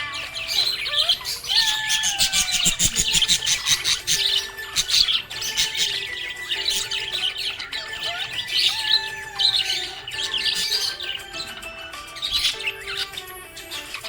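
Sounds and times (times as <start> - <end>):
budgerigars chirping: 0.0 - 14.0.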